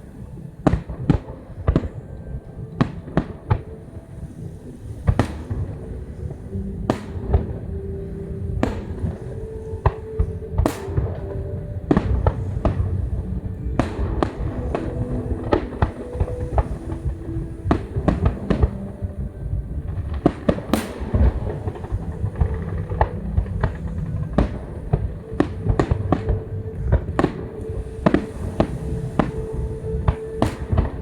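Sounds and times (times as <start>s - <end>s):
fireworks bangs and crackles: 8.4s - 29.4s.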